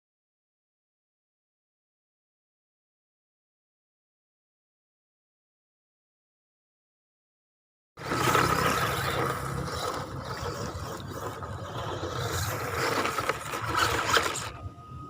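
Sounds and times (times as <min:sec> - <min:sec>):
tyres scrabbling over ground: 0:08.0 - 0:14.6
electric motor whine: 0:08.0 - 0:15.0.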